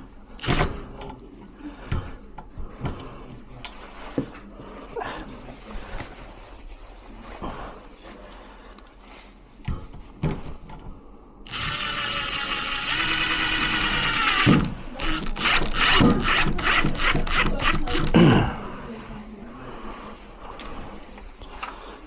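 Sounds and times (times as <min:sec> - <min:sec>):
drill trigger pulses: 0:00.3 - 0:00.9, 0:11.5 - 0:18.2
power drill motor running: 0:00.3 - 0:00.9, 0:11.5 - 0:18.2.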